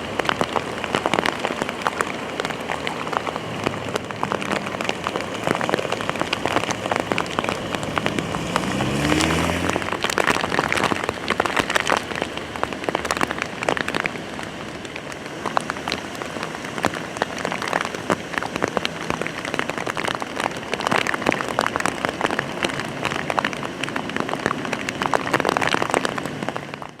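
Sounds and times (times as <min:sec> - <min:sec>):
passing engine hum: 0:00.0 - 0:18.0
heavy rain falling: 0:00.0 - 0:27.0
raindrops ticking on a surface: 0:00.0 - 0:27.0.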